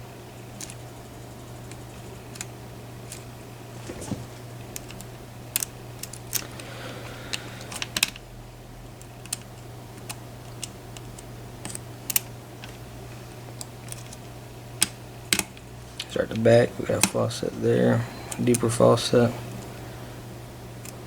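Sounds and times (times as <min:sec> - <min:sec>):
steady low hum: 0:00.0 - 0:21.0
lock pick clicking in a lock: 0:04.8 - 0:06.4, 0:09.0 - 0:12.8.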